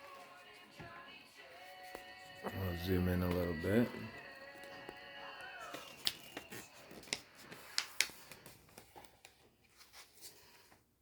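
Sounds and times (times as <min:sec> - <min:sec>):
paper being folded: 0:05.5 - 0:10.9.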